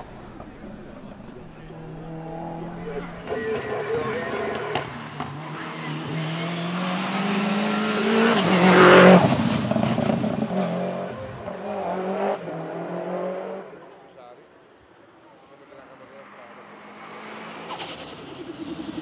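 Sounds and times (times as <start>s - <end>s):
car engine accelerating hard: 0.0s - 13.8s.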